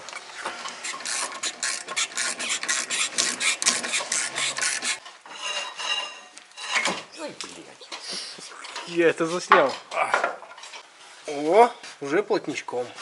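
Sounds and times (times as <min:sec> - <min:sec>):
rapid rasping scraping strokes: 0:00.7 - 0:05.6.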